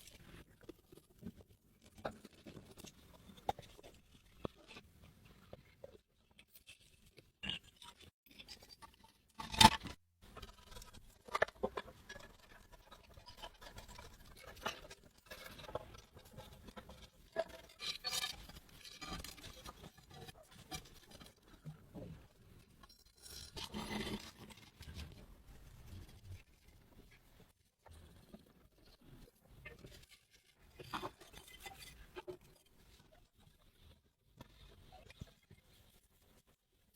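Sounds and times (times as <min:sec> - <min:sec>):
rasping scrape: 0:23.1 - 0:26.5.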